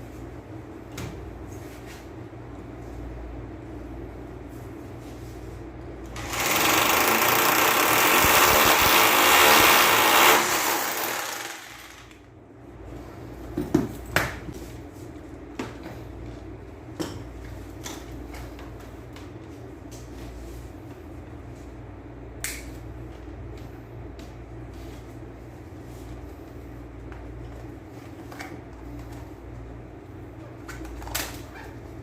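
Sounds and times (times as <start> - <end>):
power tool running: 6.2 - 12.2.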